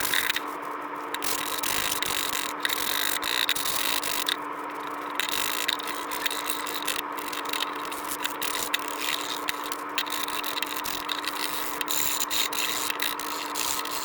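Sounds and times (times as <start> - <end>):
small motor humming: 0.0 - 14.0
scratchy scraping strokes: 4.9 - 14.0.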